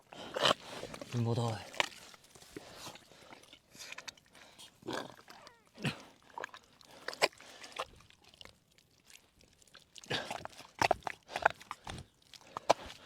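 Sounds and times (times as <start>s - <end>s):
hands squelching in mud: 0.1s - 13.0s
short grunt: 4.8s - 6.1s.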